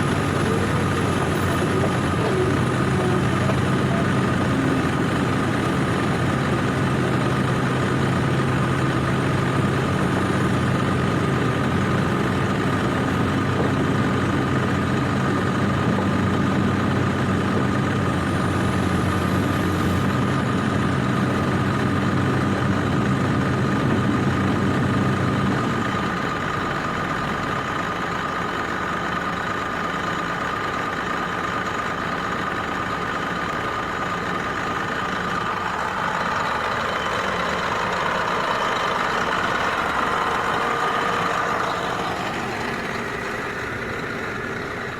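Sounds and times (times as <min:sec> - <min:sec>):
constant high whine: 0:00.0 - 0:22.0, 0:33.3 - 0:44.9
heavy diesel engine running: 0:00.0 - 0:44.9.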